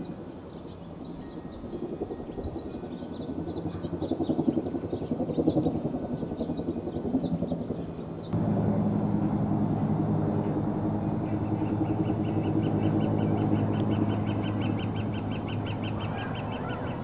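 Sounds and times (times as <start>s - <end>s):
low uneven rumble: 8.4s - 17.0s
steady hum: 8.4s - 17.0s.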